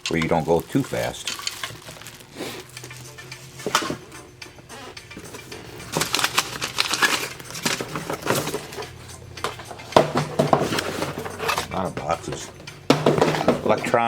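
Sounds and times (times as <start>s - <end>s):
clicks and rattles: 0.0s - 2.2s, 5.2s - 14.0s
foot pedals knocking together: 7.3s - 14.0s.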